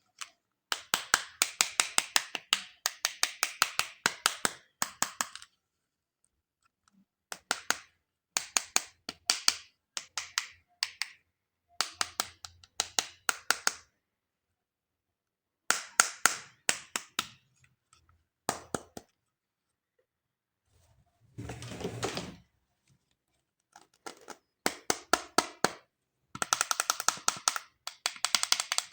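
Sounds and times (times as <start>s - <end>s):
hands tapping plastic toys: 0.7s - 5.5s, 7.3s - 11.2s, 11.8s - 13.9s, 15.7s - 17.5s, 18.5s - 19.2s, 23.8s - 28.9s.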